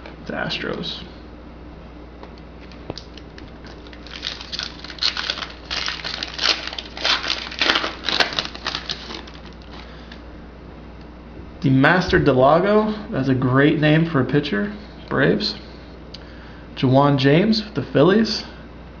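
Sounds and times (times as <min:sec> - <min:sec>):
foil wrapper crinkling and tearing: 0:02.6 - 0:10.2.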